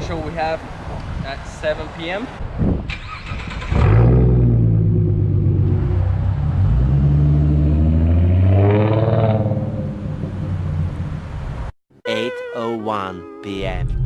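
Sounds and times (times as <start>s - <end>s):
car engine revving: 3.3s - 11.7s.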